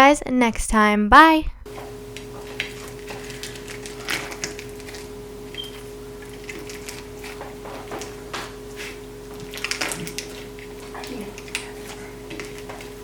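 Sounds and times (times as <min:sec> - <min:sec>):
crunchy slime being squeezed: 0:02.5 - 0:08.2, 0:09.4 - 0:10.8.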